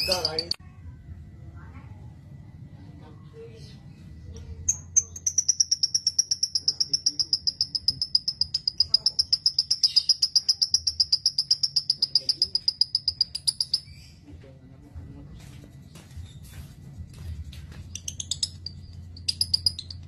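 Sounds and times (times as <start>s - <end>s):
lovebird rapid high chirps: 0.0s - 0.6s, 4.7s - 14.2s, 17.8s - 20.0s.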